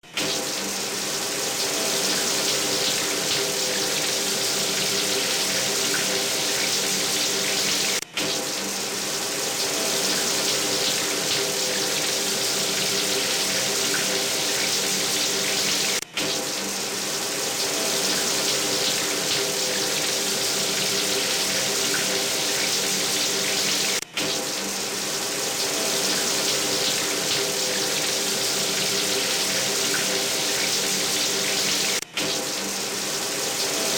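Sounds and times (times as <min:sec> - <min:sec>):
shower water spraying: 0:00.2 - 0:33.9.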